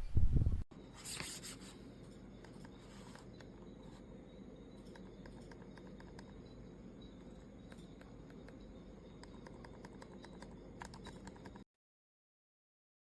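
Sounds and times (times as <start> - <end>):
low steady hum: 0.0 - 11.6
computer mouse clicking: 2.4 - 4.0, 4.7 - 11.6.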